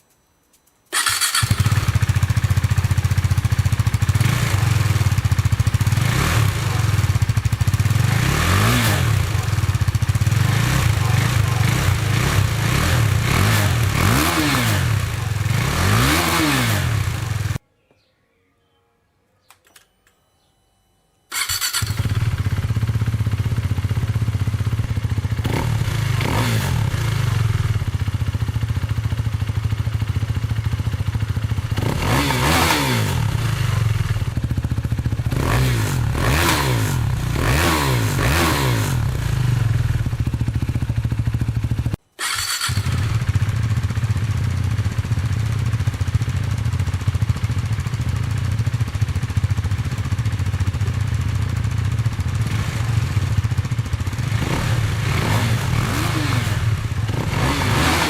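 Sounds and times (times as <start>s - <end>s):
motorcycle engine idling: 0.9s - 17.6s, 21.4s - 42.0s, 42.6s - 58.0s.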